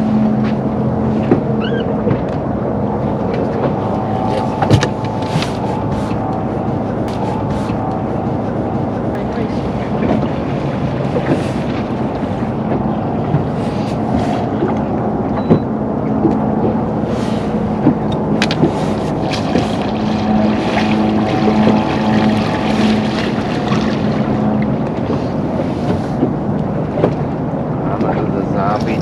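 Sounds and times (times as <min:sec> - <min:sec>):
boat motor humming: 0:00.0 - 0:29.0
wind buffeting microphone: 0:00.0 - 0:29.0.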